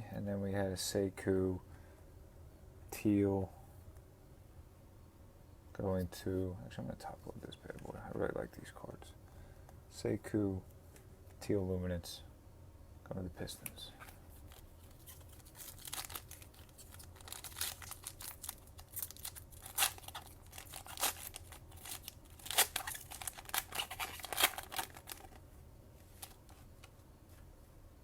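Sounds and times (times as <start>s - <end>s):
foil wrapper crinkling and tearing: 14.3s - 25.4s, 26.1s - 26.6s.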